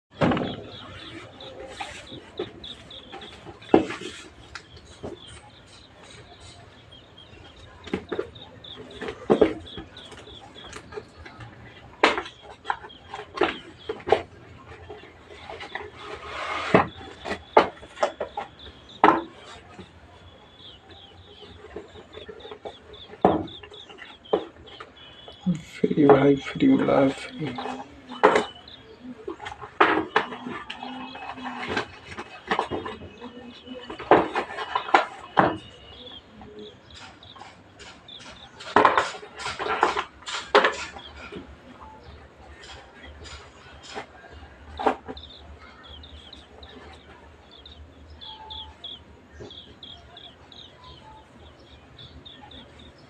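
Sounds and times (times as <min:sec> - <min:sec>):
box knocks and clatters: 0:00.1 - 0:05.4, 0:20.9 - 0:25.1.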